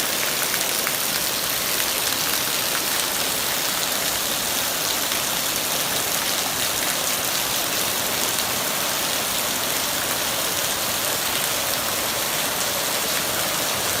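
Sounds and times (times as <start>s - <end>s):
heavy rain pouring: 0.0s - 14.0s.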